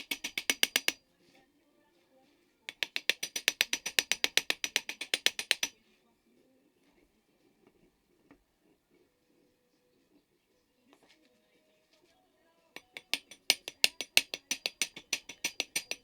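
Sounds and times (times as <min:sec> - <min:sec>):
rapid mechanical clicking: 0:00.0 - 0:01.0, 0:02.7 - 0:05.7, 0:12.9 - 0:16.0.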